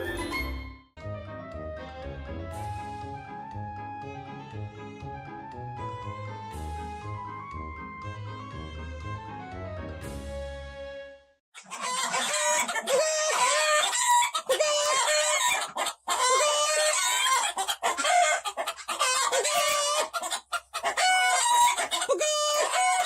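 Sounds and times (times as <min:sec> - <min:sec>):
chickens clucking and crowing: 0:11.6 - 0:23.0.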